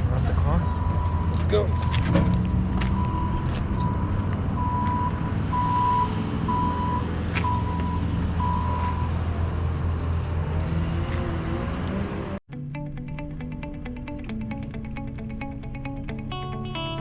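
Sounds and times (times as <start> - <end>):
reversing alarm beeping: 0.6 - 2.2, 2.8 - 9.1.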